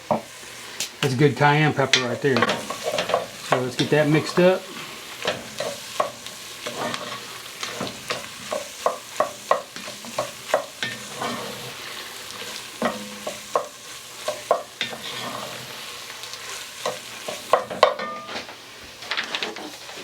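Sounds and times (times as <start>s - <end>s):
vegetables sizzling: 0.0s - 20.0s
spoon scraping a pot: 2.4s - 18.3s.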